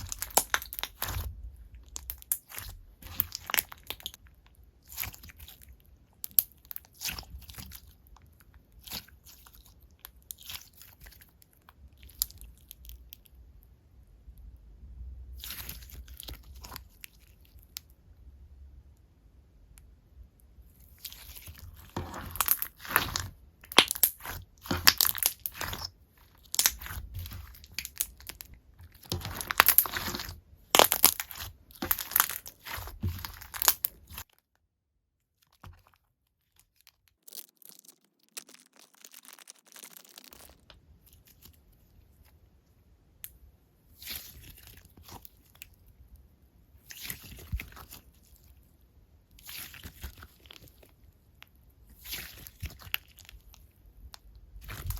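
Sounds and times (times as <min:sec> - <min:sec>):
slime crackling and popping: 0:00.0 - 0:07.9, 0:20.9 - 0:34.3, 0:36.6 - 0:41.5, 0:52.0 - 0:54.9.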